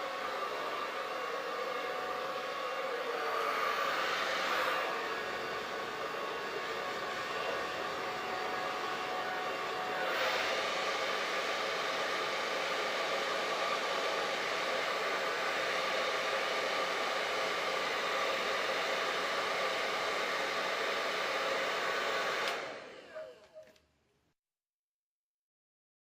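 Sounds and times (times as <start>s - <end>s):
hair dryer motor winding down: 0.0s - 23.6s
hair dryer running: 0.0s - 23.7s.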